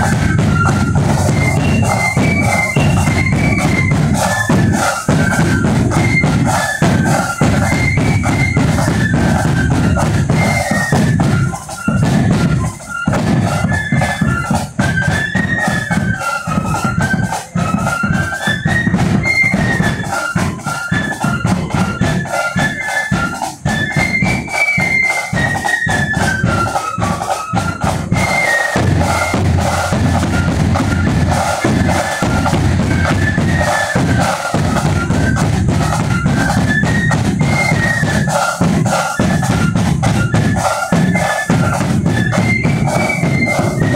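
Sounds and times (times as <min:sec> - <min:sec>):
bass drum and side drums: 0:00.0 - 0:43.9
flute melody: 0:00.0 - 0:43.9.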